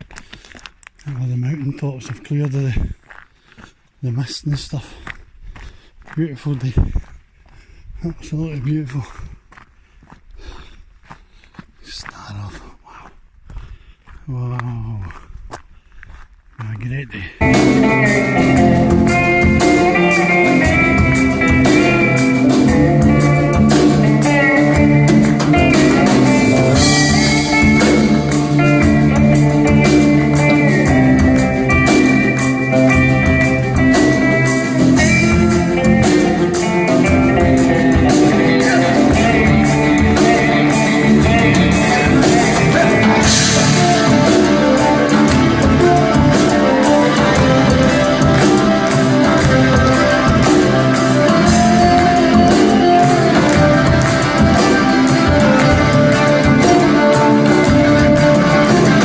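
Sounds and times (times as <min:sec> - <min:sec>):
rock music: 0:17.4 - 0:59.0.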